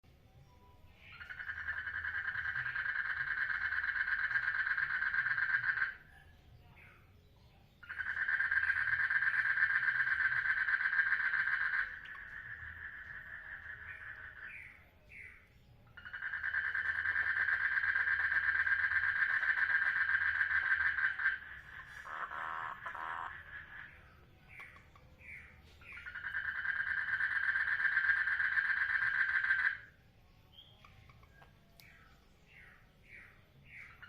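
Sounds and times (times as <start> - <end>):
frog pulsing trill: 0.9 - 6.9, 7.8 - 30.0
frog short chirps: 16.0 - 29.9.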